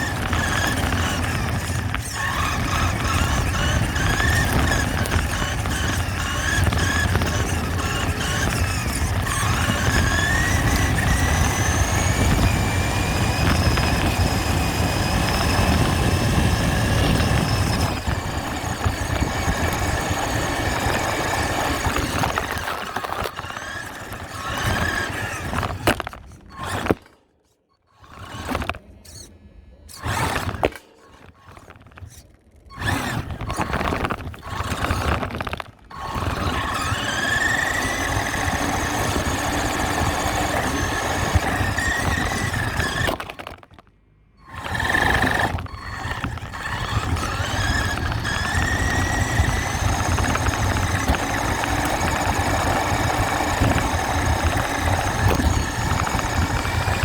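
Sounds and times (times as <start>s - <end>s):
rc truck motor whining: 0.0s - 57.0s.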